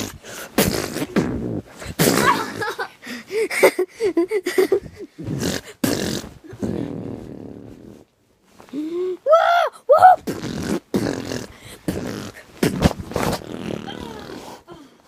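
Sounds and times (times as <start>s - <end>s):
child making breathy mouth noises: 8.7s - 10.5s, 13.8s - 15.0s
child whooping: 9.3s - 10.2s.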